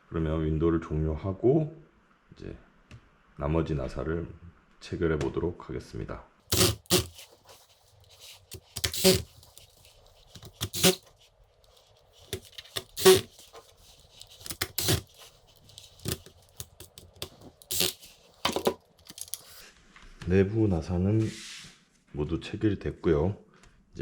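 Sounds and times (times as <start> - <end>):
screwdriver clicking on plastic: 6.5 - 7.3, 8.1 - 11.1, 12.2 - 19.6.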